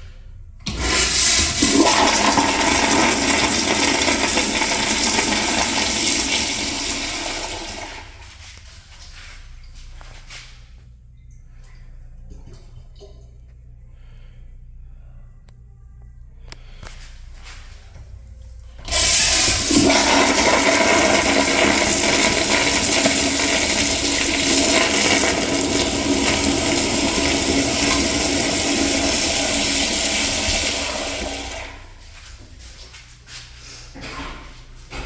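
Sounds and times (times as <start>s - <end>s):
toilet flushing: 0.6s - 10.4s, 18.8s - 32.2s.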